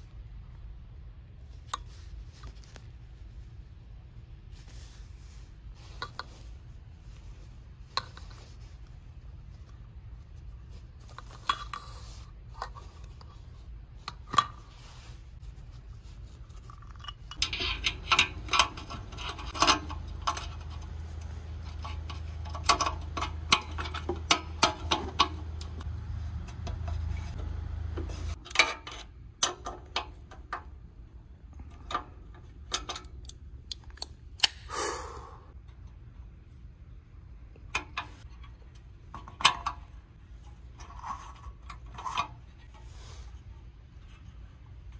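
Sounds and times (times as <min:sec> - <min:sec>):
steady low hum: 0:00.0 - 0:44.9.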